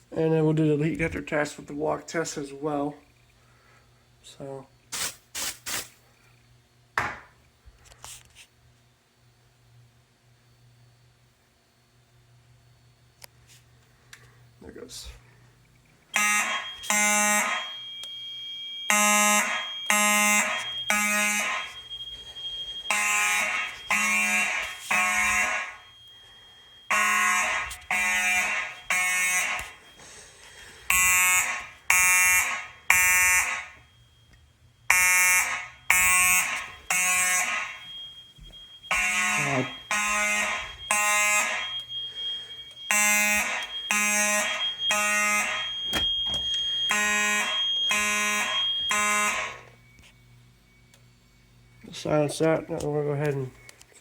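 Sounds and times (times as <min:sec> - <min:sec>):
fire alarm horn buzzing: 0:16.1 - 0:53.8.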